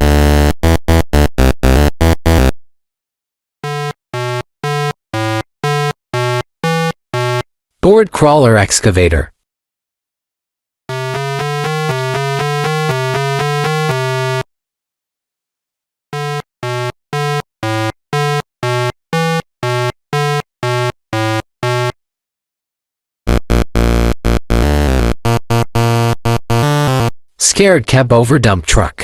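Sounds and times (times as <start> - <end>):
electronic synthesizer music: 0.0 - 2.6, 3.6 - 7.4, 10.9 - 14.4, 16.2 - 22.0, 23.3 - 27.1.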